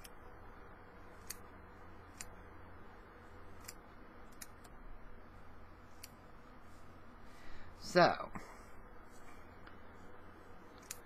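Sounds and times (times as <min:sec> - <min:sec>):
low steady hum: 0:00.0 - 0:11.0
scissors snipping: 0:01.2 - 0:01.5, 0:02.1 - 0:02.4, 0:10.7 - 0:11.0.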